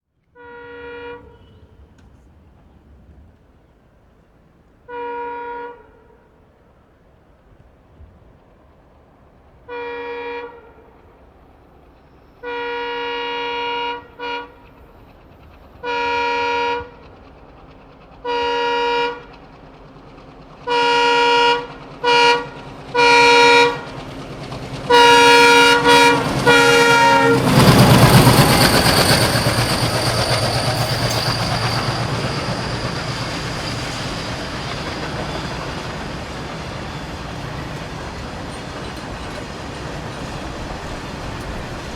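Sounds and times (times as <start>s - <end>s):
locomotive multi-tone horn: 0.4s - 2.0s, 4.9s - 6.3s, 9.7s - 11.0s, 12.4s - 14.7s, 15.8s - 17.1s, 18.2s - 19.4s, 20.6s - 24.0s, 24.8s - 35.3s
diesel engine chugging: 19.2s - 41.9s
turbocharger whistle: 25.0s - 36.1s
wagons clickety-clack: 27.4s - 41.9s.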